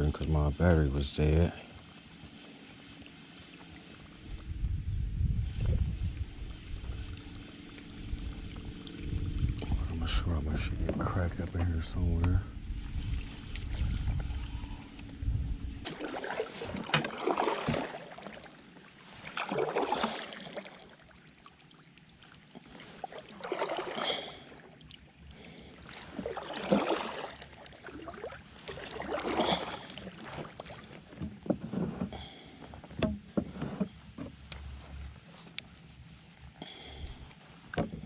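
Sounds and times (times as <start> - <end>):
paddle splashing water: 1.5 - 4.5, 12.7 - 38.0.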